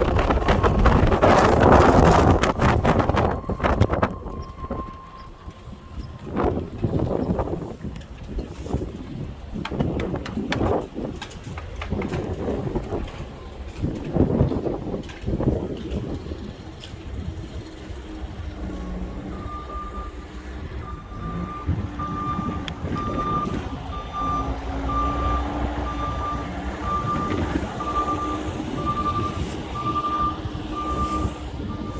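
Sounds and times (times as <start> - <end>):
truck reversing alarm beeping: 0.0 - 7.8, 16.5 - 31.9
truck engine rumble: 0.0 - 31.9.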